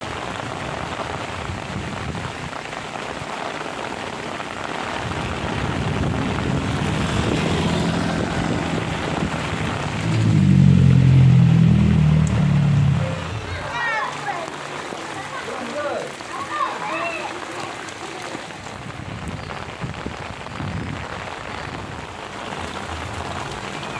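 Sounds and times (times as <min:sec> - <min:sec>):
heavy rain falling: 0:00.0 - 0:23.9
vehicle engine humming: 0:05.6 - 0:14.2, 0:22.1 - 0:23.9.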